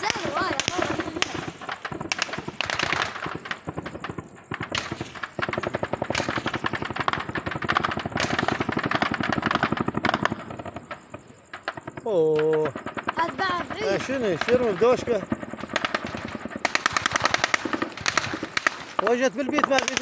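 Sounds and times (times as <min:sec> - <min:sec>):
machine-gun fire: 0:00.0 - 0:12.0, 0:12.6 - 0:20.0
rifle fire: 0:00.0 - 0:20.0.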